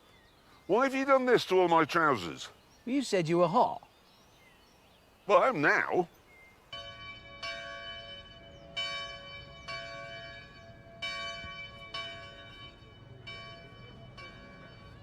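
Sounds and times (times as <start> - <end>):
faint bird chirps: 0.0 - 7.0
church bells ringing: 6.7 - 15.0.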